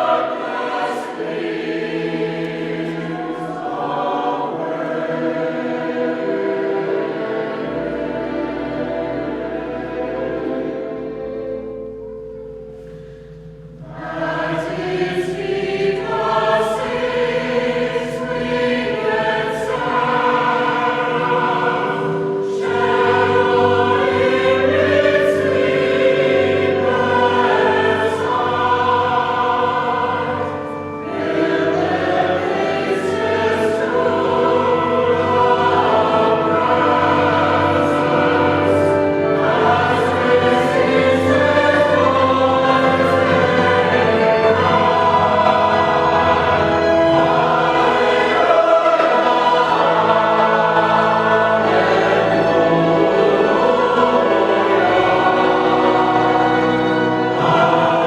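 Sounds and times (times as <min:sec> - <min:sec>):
choir singing held chords: 0:00.0 - 0:58.0.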